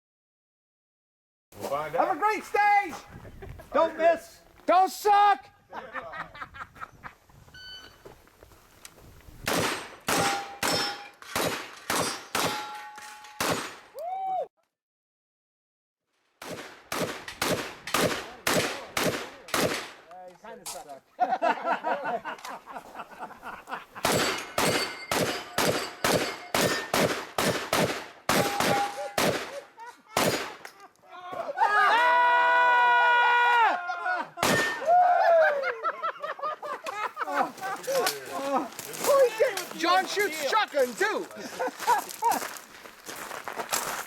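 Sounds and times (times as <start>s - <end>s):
short beep: 7.6s - 8.1s
shotgun shots: 9.4s - 13.9s, 16.4s - 20.0s, 24.0s - 29.6s, 30.2s - 30.6s, 34.4s - 34.8s
struck steel ringing: 9.7s - 11.2s, 12.0s - 13.4s, 24.1s - 27.1s, 28.3s - 29.2s, 34.4s - 34.9s.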